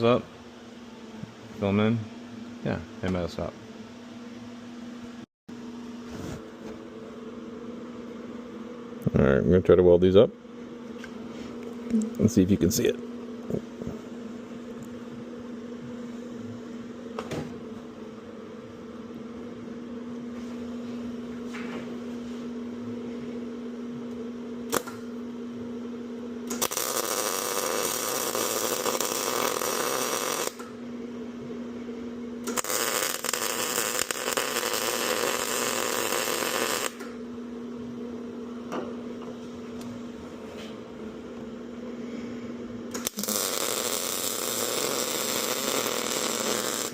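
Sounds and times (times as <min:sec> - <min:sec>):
welder hum: 0:00.0 - 0:46.9
welding arc crackle: 0:26.5 - 0:30.7, 0:32.4 - 0:37.2, 0:42.9 - 0:46.9.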